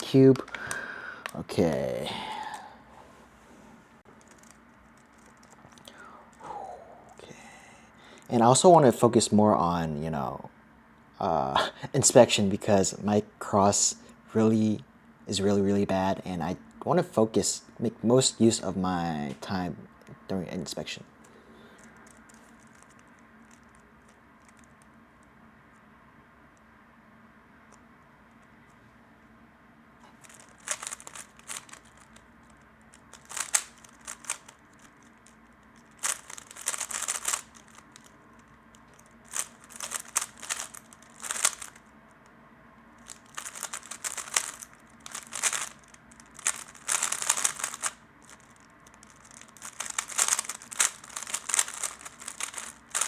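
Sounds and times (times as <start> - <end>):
puzzle cube plastic clacking: 0.0 - 1.4, 4.1 - 6.4, 21.2 - 25.3, 30.1 - 42.4, 43.0 - 53.0.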